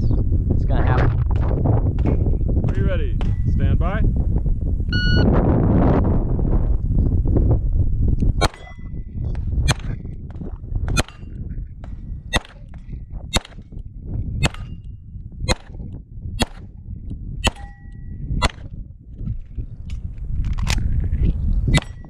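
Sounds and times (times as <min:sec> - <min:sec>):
pistol shots: 0:12.3 - 0:13.6, 0:14.4 - 0:14.8, 0:15.5 - 0:16.7
steel plate ringing: 0:17.5 - 0:18.1.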